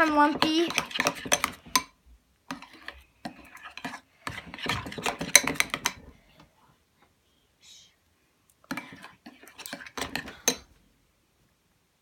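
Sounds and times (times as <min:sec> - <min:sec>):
utensil scraping a bowl: 0:00.0 - 0:06.1, 0:08.7 - 0:10.6.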